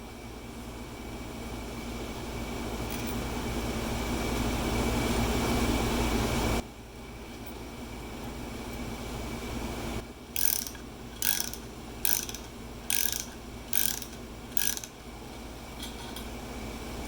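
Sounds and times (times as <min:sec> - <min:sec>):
steady shop hum: 0:00.0 - 0:17.0
ratchet wrench clicking: 0:10.4 - 0:15.0.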